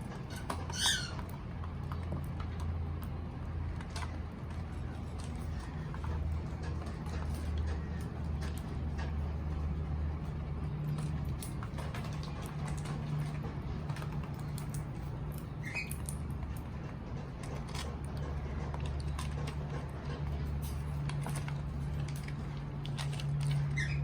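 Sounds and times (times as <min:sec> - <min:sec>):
bird squeak: 0:00.3 - 0:01.4, 0:15.5 - 0:16.1, 0:23.6 - 0:24.0.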